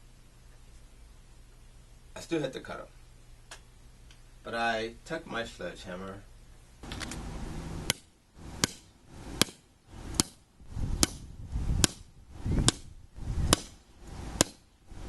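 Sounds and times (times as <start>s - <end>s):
sledgehammer striking metal pole: 8.6s - 9.6s, 10.2s - 10.4s, 11.8s - 12.9s, 13.5s - 13.8s, 14.4s - 14.6s.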